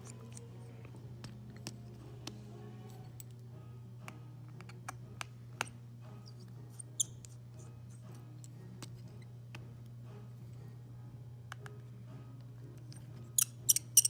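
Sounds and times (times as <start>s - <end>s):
small screwdriver and screw clicks: 0.0s - 0.5s
steady low hum: 0.0s - 13.8s.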